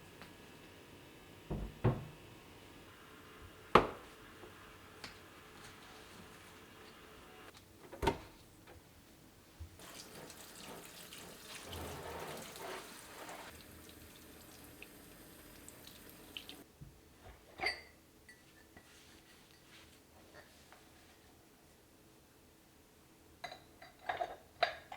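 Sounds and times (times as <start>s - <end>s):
water running from a tap: 9.8s - 16.6s.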